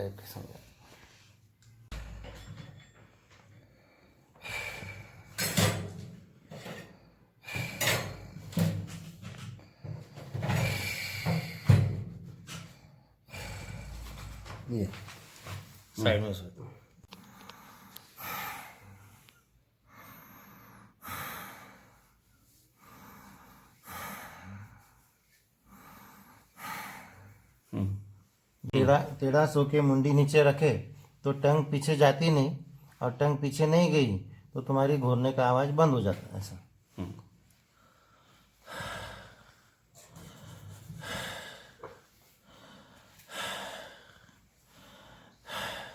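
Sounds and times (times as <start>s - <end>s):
man breathing slowly: 2.5s - 15.6s, 17.0s - 28.6s, 36.8s - 45.9s.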